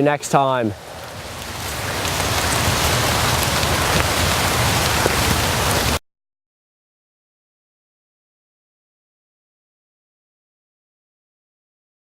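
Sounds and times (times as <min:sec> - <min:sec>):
steady rain falling: 0:00.2 - 0:06.0.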